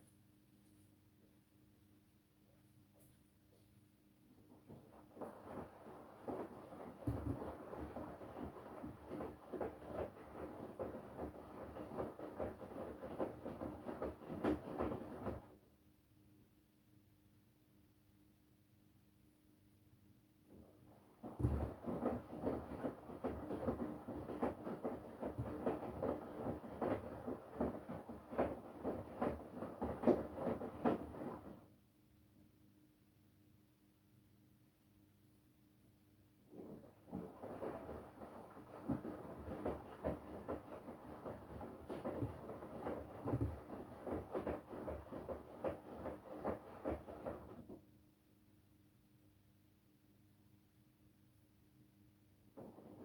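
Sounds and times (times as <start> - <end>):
washing machine drum tumbling laundry: 4.7 - 15.5, 20.8 - 31.6, 36.6 - 47.8, 52.6 - 53.0.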